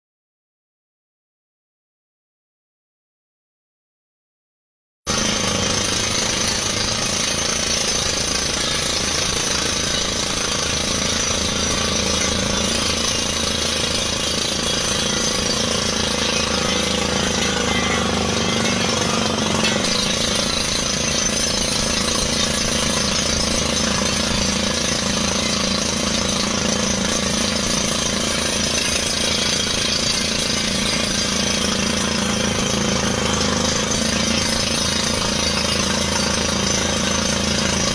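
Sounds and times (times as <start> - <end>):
engine and air compressor drone: 5.1 - 37.9
pneumatic drill hammering: 5.1 - 37.9.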